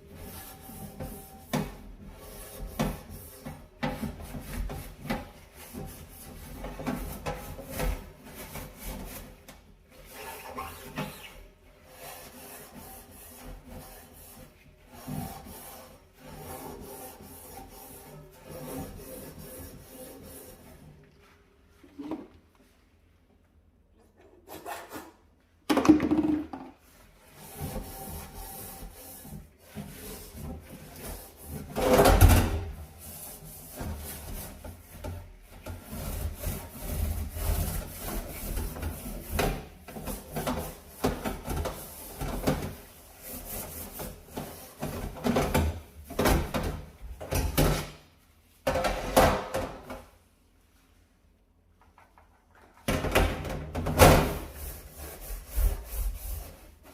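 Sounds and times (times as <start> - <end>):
brush scrubbing a stove: 0.0 - 21.0, 26.9 - 46.4, 54.2 - 56.9.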